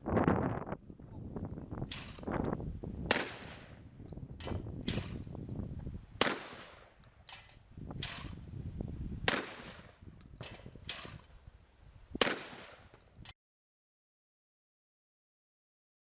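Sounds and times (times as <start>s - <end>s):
shotgun shots with echo: 3.0s - 3.7s, 6.2s - 7.0s, 9.3s - 10.0s, 12.2s - 12.9s.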